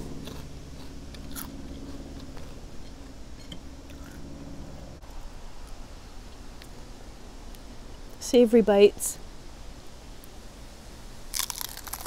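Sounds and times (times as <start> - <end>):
chewing and crunching chips: 0.0 - 3.1, 11.3 - 12.0
low steady hum: 0.0 - 12.0.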